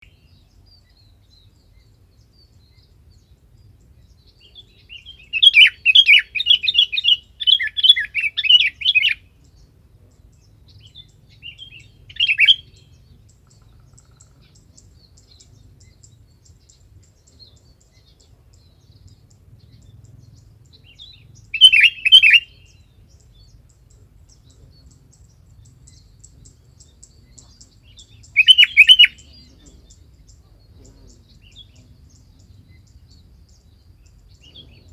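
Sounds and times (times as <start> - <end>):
bird bubbly chirps: 28.2 - 29.2.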